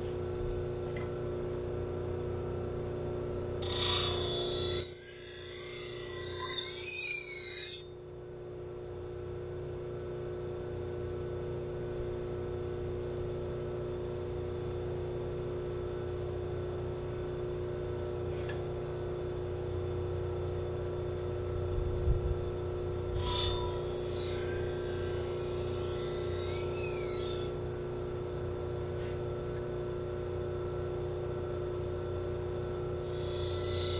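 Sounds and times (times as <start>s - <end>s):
knife grinding on wheel: 3.6s - 7.9s, 23.1s - 27.7s, 33.0s - 33.9s
sharpening wheels humming: 3.6s - 8.0s, 23.1s - 27.8s, 33.0s - 33.9s.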